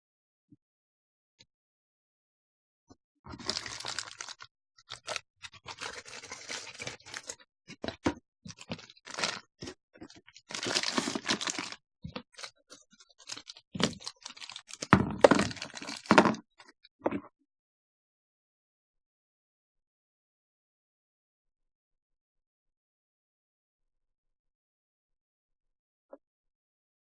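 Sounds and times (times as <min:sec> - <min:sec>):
packaging crinkling and tearing: 0:03.3 - 0:07.4, 0:08.5 - 0:16.4.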